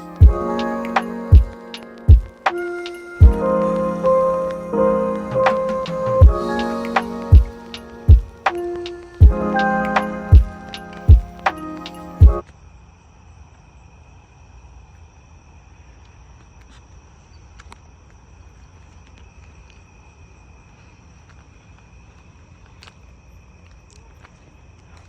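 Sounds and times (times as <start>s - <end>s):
crickets trilling: 12.4s - 25.0s.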